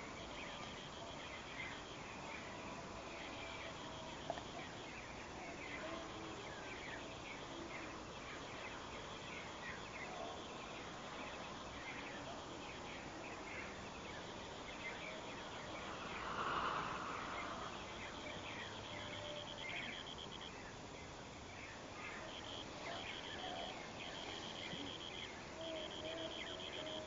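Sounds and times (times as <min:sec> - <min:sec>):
pulsing insect trill: 0:00.0 - 0:20.6, 0:22.0 - 0:27.0
brief rushing sound: 0:15.8 - 0:18.3.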